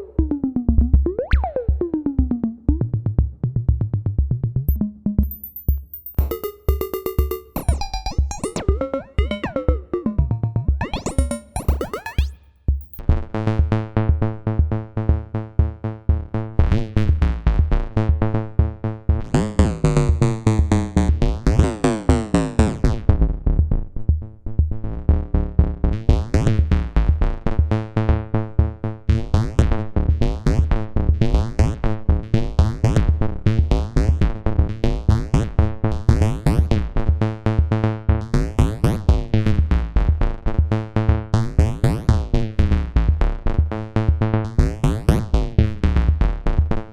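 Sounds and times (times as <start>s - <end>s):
drum machine hits: 4.2s - 13.0s
pulsing synthesizer tones: 4.7s - 13.0s.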